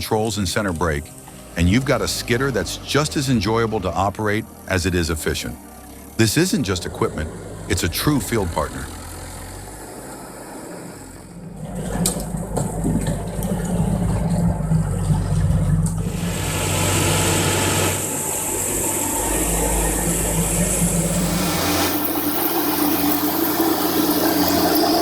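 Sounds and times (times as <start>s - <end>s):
heavy machine engine running: 0.7s - 25.0s
rushing hiss: 16.1s - 25.0s.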